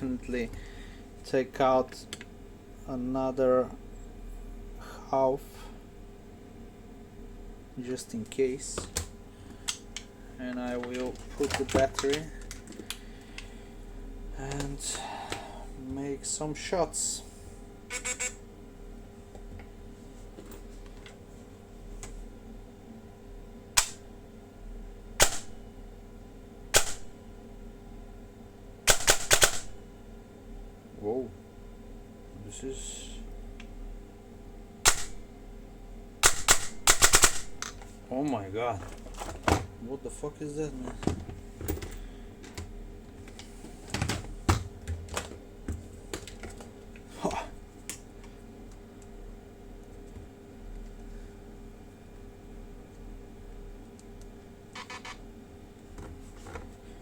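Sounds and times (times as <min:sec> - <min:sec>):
airsoft gun shots: 0:26.8 - 0:27.1, 0:34.9 - 0:35.2, 0:36.2 - 0:37.5.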